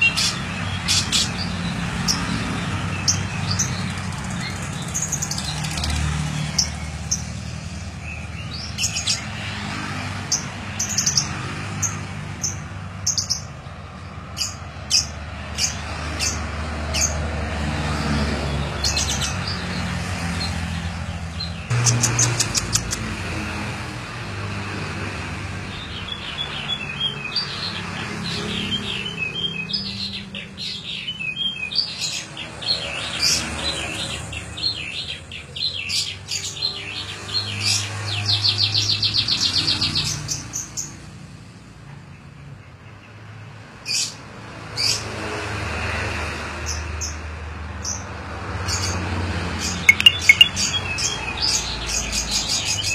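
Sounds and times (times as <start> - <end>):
canary singing: 0.0 - 7.4, 20.5 - 23.3, 49.7 - 52.9
sharp bird calls: 0.0 - 7.4, 20.5 - 23.2, 49.6 - 52.9
bird rattling trill: 21.7 - 23.1, 49.9 - 50.5.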